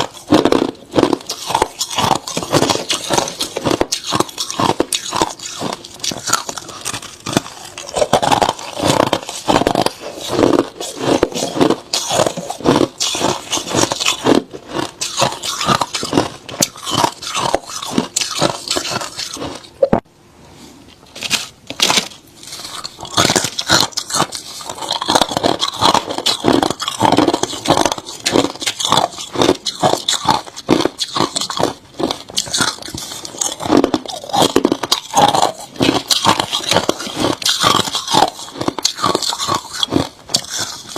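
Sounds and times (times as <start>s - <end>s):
crunching ice being chewed: 0.0s - 19.8s, 21.2s - 40.9s.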